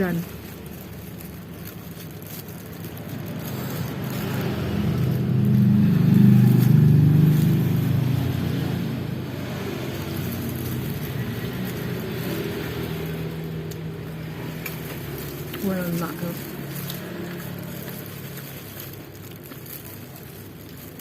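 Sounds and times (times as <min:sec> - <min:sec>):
vehicle engine passing by: 0:02.3 - 0:21.0.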